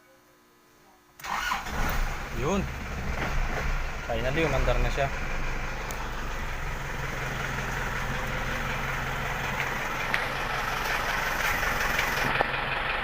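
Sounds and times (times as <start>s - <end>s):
car engine idling: 1.2s - 13.0s.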